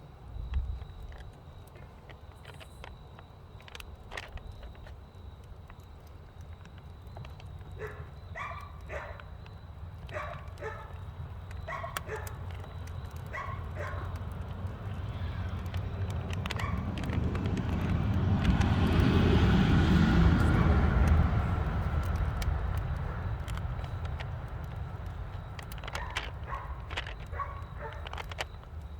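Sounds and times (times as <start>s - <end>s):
vehicle rumble approaching: 3.6s - 28.9s
dog barking: 7.8s - 9.3s, 10.1s - 11.0s, 11.7s - 12.4s, 13.3s - 14.2s, 16.6s - 16.9s, 26.0s - 28.1s.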